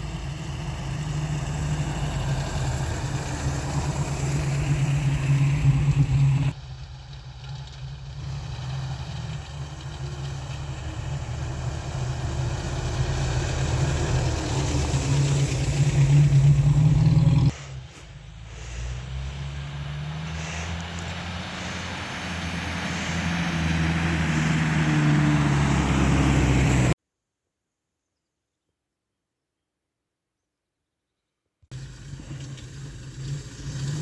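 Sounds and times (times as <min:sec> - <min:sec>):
engine running: 0:00.0 - 0:27.0, 0:31.7 - 0:34.0.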